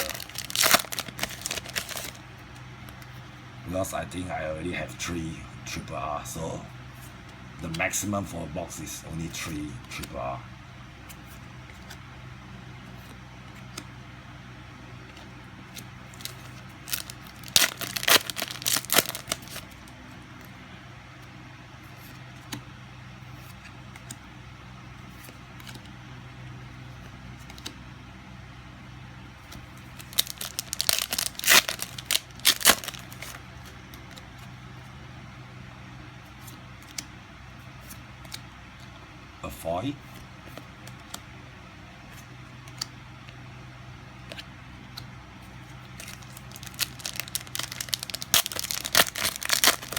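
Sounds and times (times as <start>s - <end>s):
wrappers tearing and crinkling: 0.0s - 2.2s, 16.1s - 19.6s, 30.0s - 33.4s, 46.0s - 49.9s
steady low hum: 0.0s - 49.9s.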